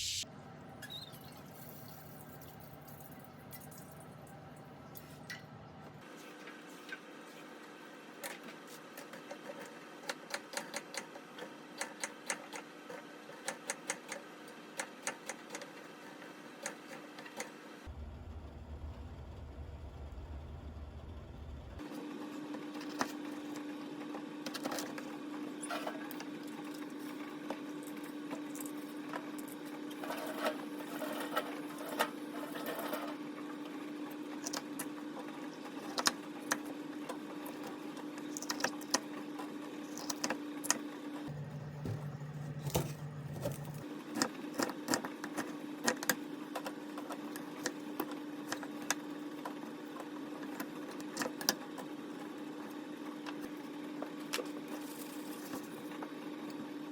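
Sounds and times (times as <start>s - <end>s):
electrical hum: 17.8s - 56.9s.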